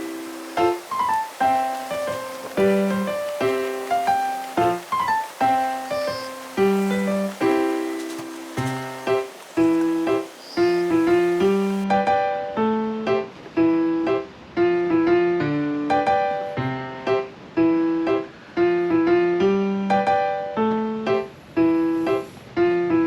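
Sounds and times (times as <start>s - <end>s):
bouncy piano music: 0.0s - 23.0s.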